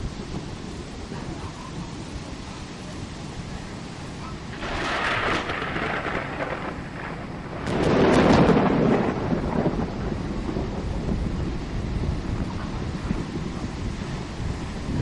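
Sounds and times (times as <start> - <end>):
thunder: 4.5 - 14.2.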